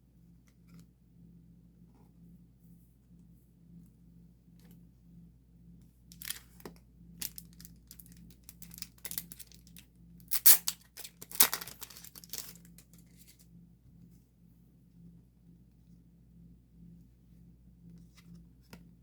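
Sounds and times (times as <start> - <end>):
packaging crinkling and tearing: 6.2 - 6.4, 7.2 - 12.8.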